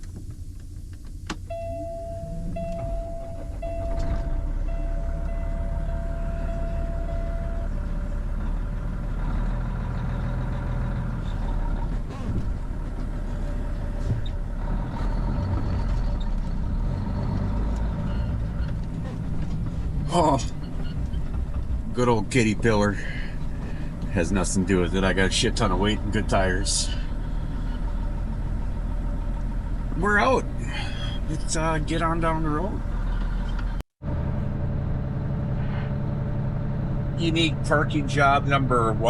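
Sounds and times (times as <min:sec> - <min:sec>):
diesel truck engine starting and running: 0:00.0 - 0:39.0
dash warning buzzer: 0:01.4 - 0:07.9.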